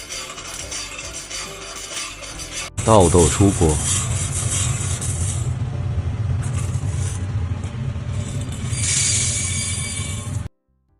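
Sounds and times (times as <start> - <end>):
coffee roaster humming: 2.8 - 10.5.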